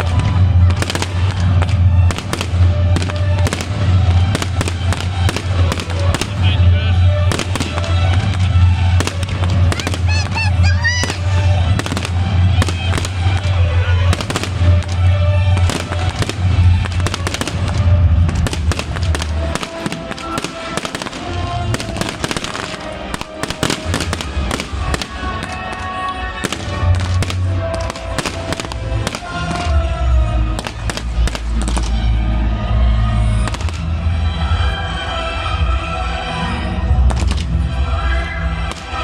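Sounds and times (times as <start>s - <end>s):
music with heavy bass: 0.0s - 22.7s
fireworks bangs and crackles: 0.0s - 35.7s, 36.4s - 39.0s.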